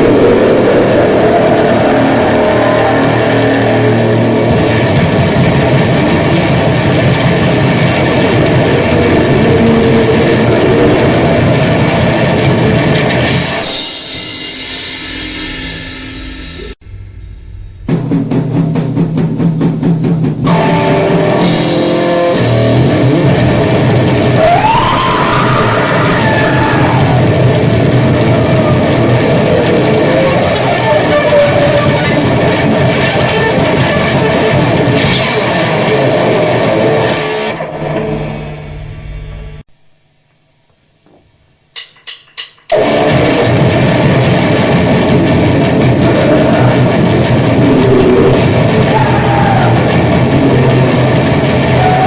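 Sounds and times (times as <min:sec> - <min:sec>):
distorted guitar and drums: 0:00.0 - 0:40.0, 0:41.0 - 0:52.0
gliding guitar squeals: 0:24.2 - 0:37.5.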